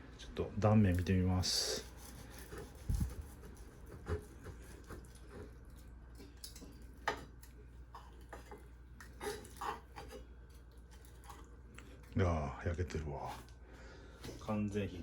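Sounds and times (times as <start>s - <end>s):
knife scraping chicken: 1.4s - 5.6s, 8.0s - 10.3s.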